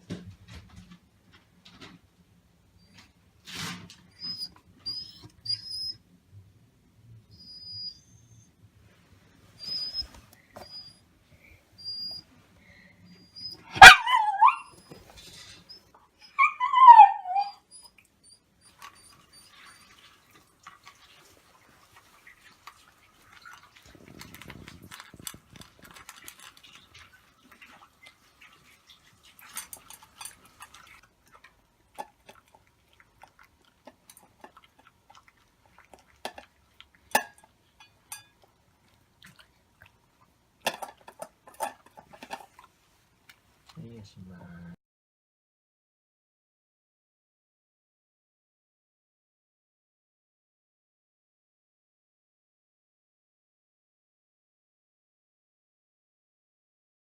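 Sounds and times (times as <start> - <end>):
dog whining: 4.0 - 6.1, 7.2 - 8.6, 9.6 - 12.3, 12.9 - 20.0
faint clicks and shuffling: 8.7 - 12.7, 18.7 - 37.1
dog crying: 13.2 - 15.1, 15.7 - 19.6.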